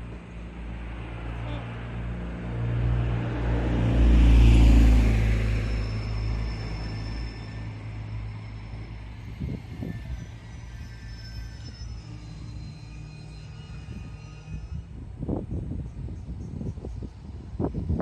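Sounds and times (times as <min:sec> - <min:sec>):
vehicle passing by: 0:00.0 - 0:06.1.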